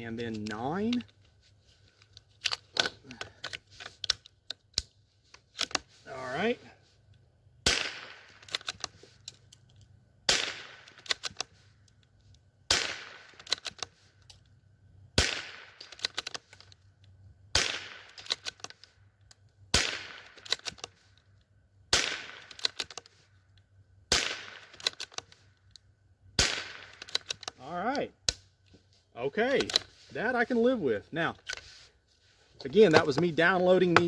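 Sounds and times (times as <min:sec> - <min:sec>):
rifle shots: 0:07.6 - 0:08.5, 0:10.3 - 0:11.2, 0:12.7 - 0:13.4, 0:15.2 - 0:15.8, 0:17.5 - 0:18.2, 0:19.7 - 0:20.4, 0:21.9 - 0:22.7, 0:24.1 - 0:24.9, 0:26.4 - 0:27.3
rattle of small clicks: 0:08.2 - 0:10.0, 0:10.6 - 0:14.6, 0:15.6 - 0:17.2, 0:17.9 - 0:21.6, 0:22.2 - 0:27.6.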